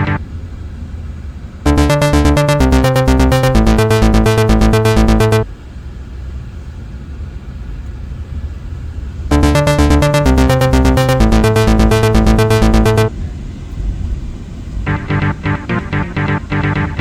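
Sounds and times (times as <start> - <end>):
electronic music with thumping beat: 0.0 - 0.2, 1.7 - 5.4, 9.3 - 13.1, 14.9 - 17.0.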